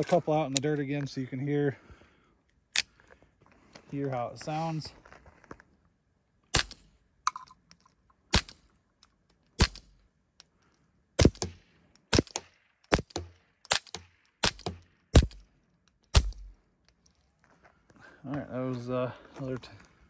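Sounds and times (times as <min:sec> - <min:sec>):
suppressed pistol shots: 0:06.5 - 0:06.9, 0:08.3 - 0:08.6, 0:09.6 - 0:10.0, 0:11.2 - 0:15.4, 0:16.1 - 0:16.6.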